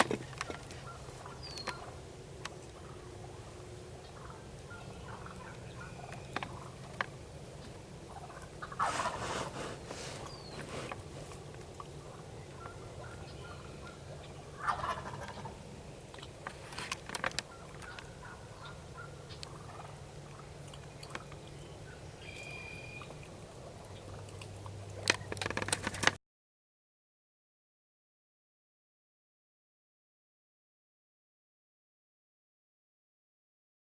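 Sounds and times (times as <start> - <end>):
faint turkey calls: 0.2 - 25.3
turkey gobbling: 0.4 - 2.0, 2.7 - 15.6, 17.4 - 20.6.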